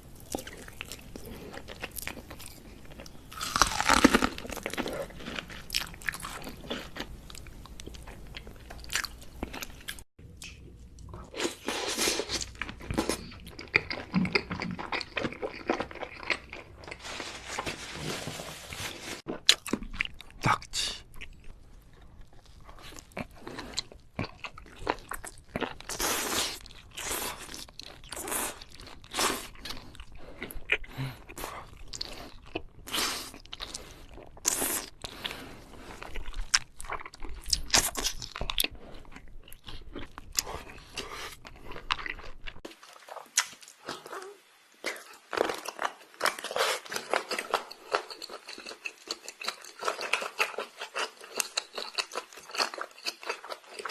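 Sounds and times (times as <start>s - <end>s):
crunchy bites and chewing: 0.3s - 10.0s, 44.9s - 53.9s.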